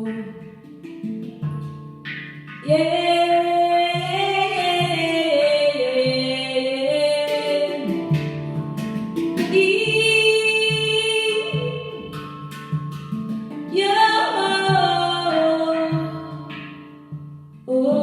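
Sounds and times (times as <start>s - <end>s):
woman singing: 0.0s - 0.7s, 2.6s - 8.8s, 9.4s - 12.4s, 13.7s - 16.8s, 17.7s - 18.0s.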